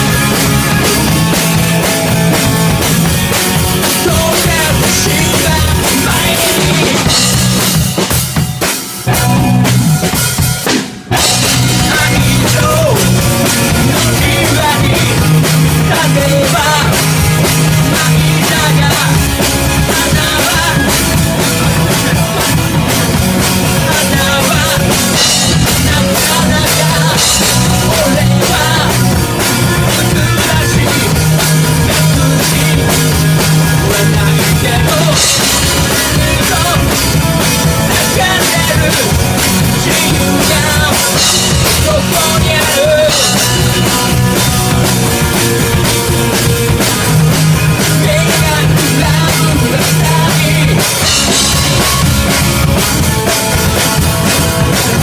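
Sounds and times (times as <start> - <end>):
drum kit: 0.0 - 55.0
rock band playing: 0.0 - 55.0.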